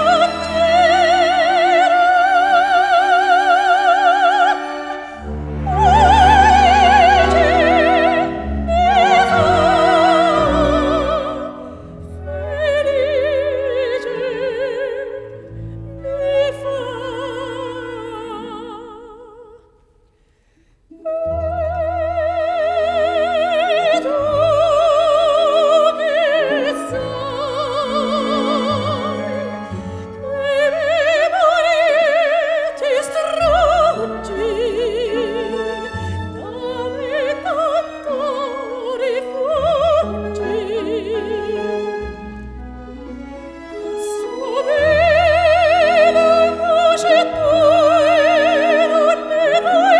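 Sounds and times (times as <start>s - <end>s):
orchestral accompaniment: 0.0s - 18.9s, 21.1s - 49.9s
operatic voice singing: 43.9s - 49.9s.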